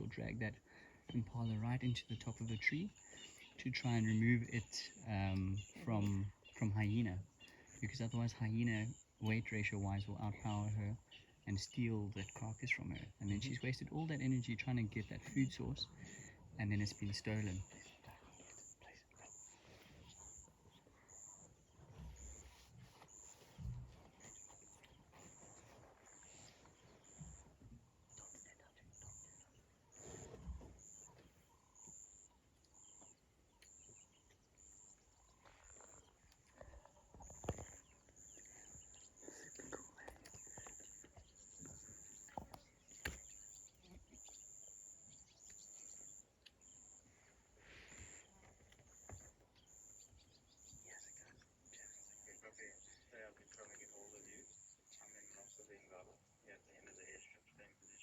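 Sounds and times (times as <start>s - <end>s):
insect chirping: 27.0s - 52.9s.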